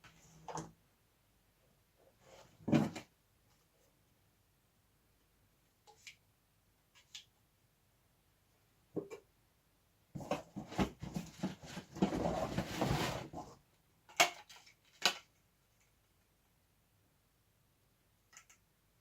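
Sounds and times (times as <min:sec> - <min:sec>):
plastic parts rustling and clattering: 0:10.2 - 0:15.4.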